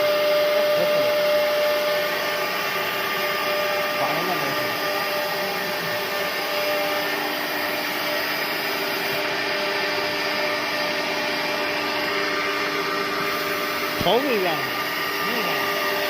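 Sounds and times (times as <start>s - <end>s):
machine spindle whine: 0.0s - 16.0s.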